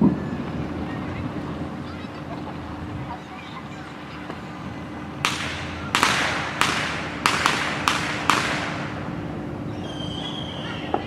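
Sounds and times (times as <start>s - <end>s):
fireworks bangs echoing: 5.2s - 9.5s.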